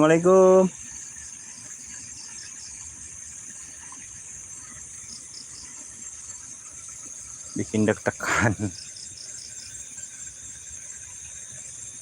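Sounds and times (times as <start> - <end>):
night insects trilling: 0.0 - 12.0.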